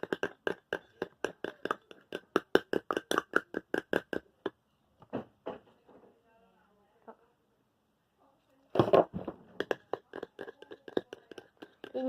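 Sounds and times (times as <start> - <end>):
tapping on glass jar: 0.0 - 4.6, 8.8 - 12.0.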